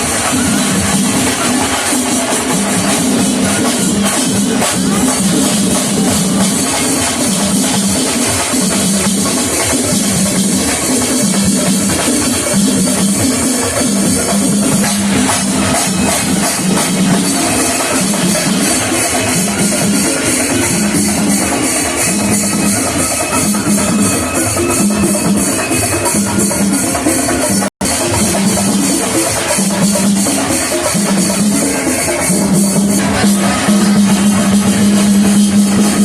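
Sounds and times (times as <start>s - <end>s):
cymbals clashing: 0.0s - 36.0s
loud drumming: 0.0s - 36.0s.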